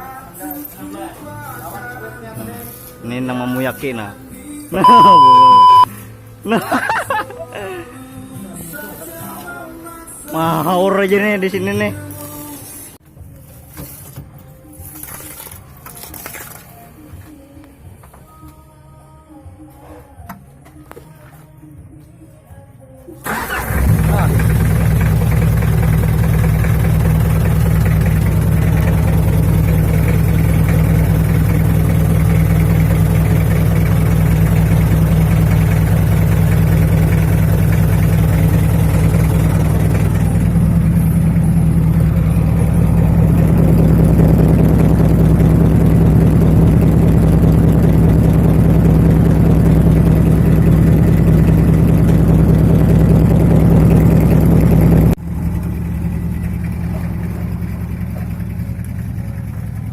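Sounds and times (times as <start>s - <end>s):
diesel engine idling: 23.2s - 59.9s.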